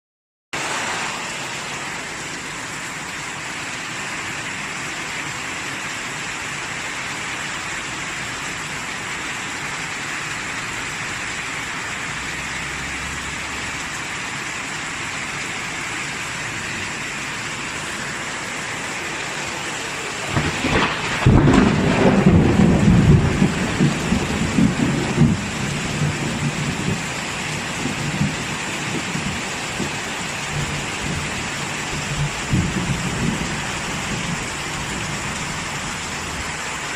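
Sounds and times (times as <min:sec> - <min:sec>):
heavy rain hiss: 0:00.6 - 0:36.9
thunder rumble: 0:20.2 - 0:36.6.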